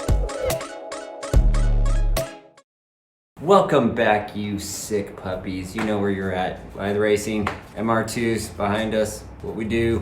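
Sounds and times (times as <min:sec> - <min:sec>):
intro music with heavy bass: 0:00.0 - 0:02.4.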